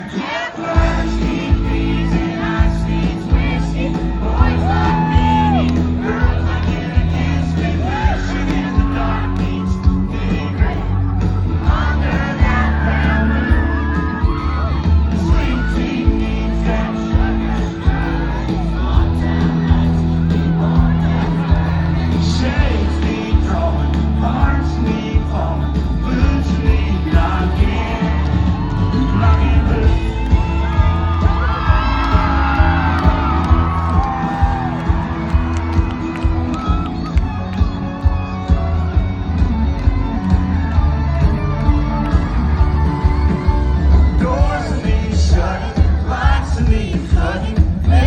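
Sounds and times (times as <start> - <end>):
person singing: 0.0 - 37.0, 40.0 - 48.0
crowd shouting: 0.0 - 48.0
live country band music: 0.0 - 48.0
heavy bass line: 0.8 - 48.0
kick drum beat: 29.5 - 48.0.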